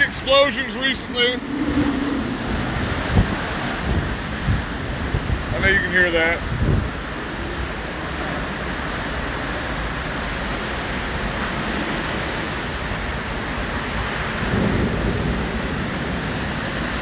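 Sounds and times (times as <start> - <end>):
strong wind rushing: 0.0 - 17.0.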